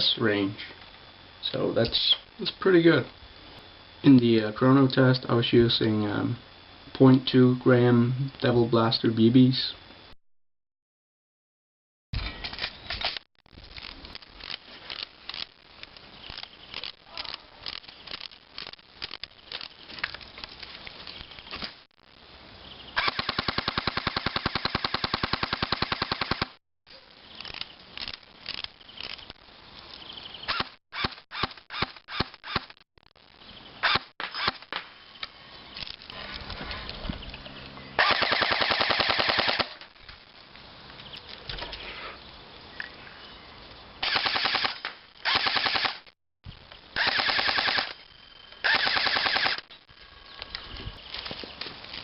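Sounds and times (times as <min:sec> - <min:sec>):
airsoft gun full-auto bursts: 0:23.0 - 0:26.6, 0:38.0 - 0:39.8, 0:44.0 - 0:46.1, 0:47.0 - 0:48.0, 0:48.6 - 0:49.7
sharp clicks: 0:23.0 - 0:26.6, 0:38.0 - 0:39.9, 0:44.0 - 0:46.2, 0:47.0 - 0:49.7.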